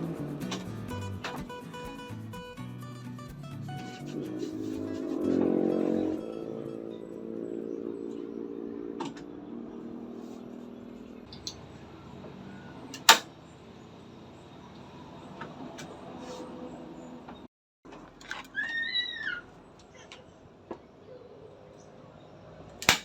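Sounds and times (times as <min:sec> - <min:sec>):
guitar music: 0:00.0 - 0:07.8.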